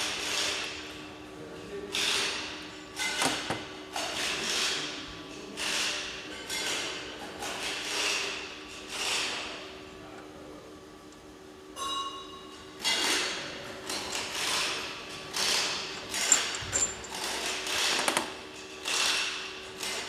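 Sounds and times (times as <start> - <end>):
metal parts scraping and sliding: 15.6 - 17.4
metallic clink: 15.8 - 17.4.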